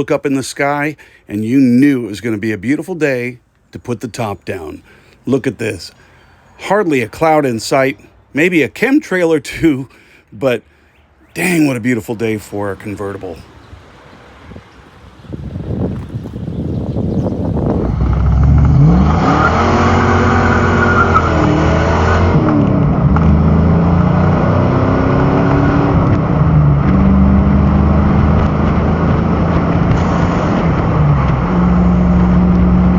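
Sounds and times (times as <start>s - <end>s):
car engine accelerating: 14.0s - 32.9s.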